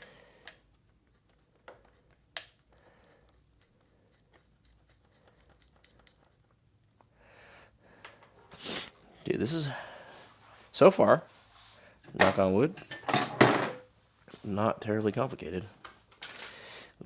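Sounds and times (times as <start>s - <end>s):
sharp ringing metal clink: 12.8s - 13.5s.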